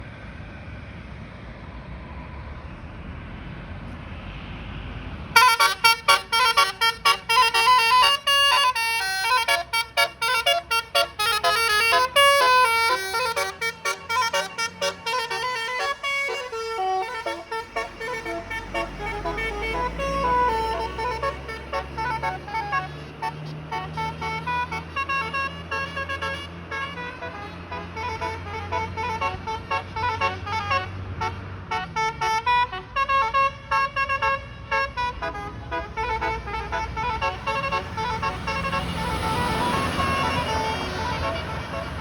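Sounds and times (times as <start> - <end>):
low engine rumble: 0.0 - 42.0
multi-tone bus horn melody: 5.3 - 42.0.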